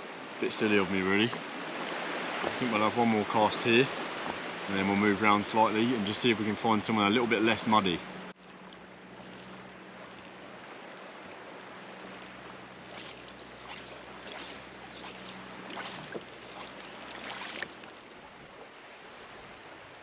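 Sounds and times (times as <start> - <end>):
steady outdoor wash: 0.0 - 20.0
water sloshing and splashing: 1.2 - 6.6, 7.5 - 20.0
soft swishes: 12.8 - 17.9.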